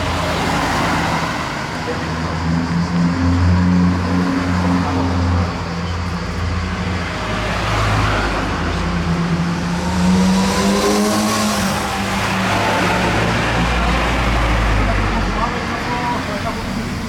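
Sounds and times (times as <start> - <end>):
vehicle engine humming: 0.0 - 17.0.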